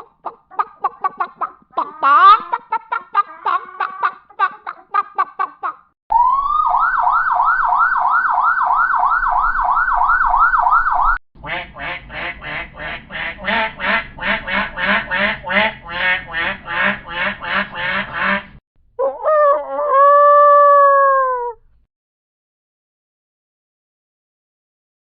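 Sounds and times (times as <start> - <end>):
duck quacking: 0.0 - 5.8, 11.4 - 18.6
chicken clucking: 0.0 - 5.9
emergency siren sweeping: 6.1 - 11.2.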